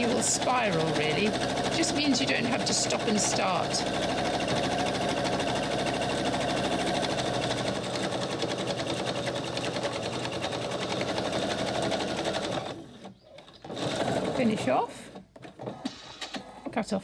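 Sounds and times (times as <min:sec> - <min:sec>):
electric sewing machine stitching: 0:00.0 - 0:16.7.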